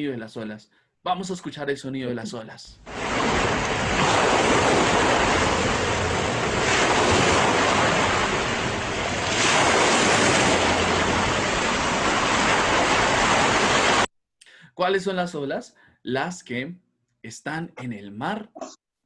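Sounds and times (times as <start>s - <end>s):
ocean waves breaking on beach: 2.9s - 14.1s.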